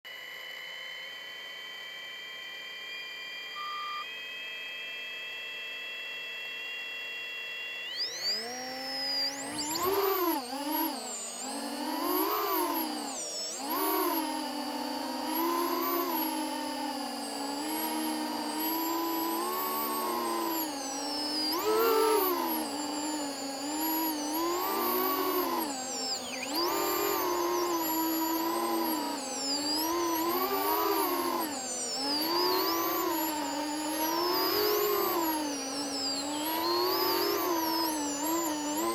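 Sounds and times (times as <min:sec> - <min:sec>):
drone motors whining: 0:00.1 - 0:38.9
faint electronic tones: 0:02.8 - 0:38.9
short beep: 0:03.6 - 0:04.1.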